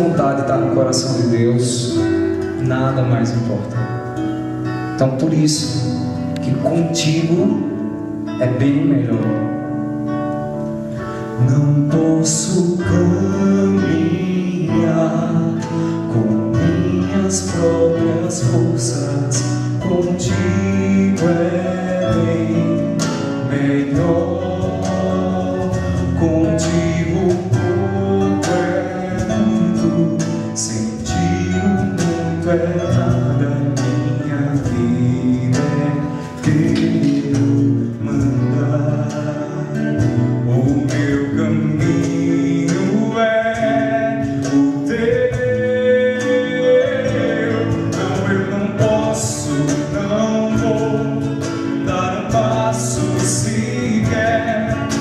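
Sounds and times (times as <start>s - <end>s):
guitar accompaniment: 0.0s - 55.0s
worship song singing: 0.0s - 55.0s.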